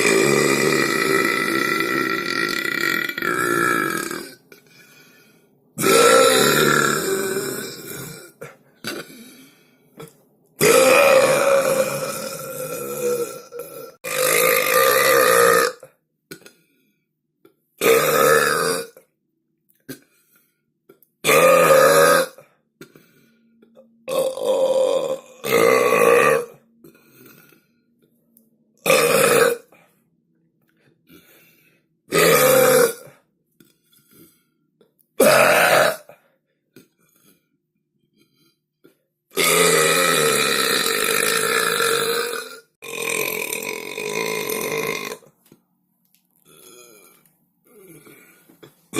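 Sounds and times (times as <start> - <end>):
person belching loudly: 0.0 - 4.4, 5.8 - 9.2, 10.0 - 16.5, 17.8 - 19.0, 21.2 - 22.4, 24.0 - 26.6, 28.8 - 29.8, 32.1 - 33.1, 35.2 - 36.2, 39.3 - 45.3, 46.4 - 48.3.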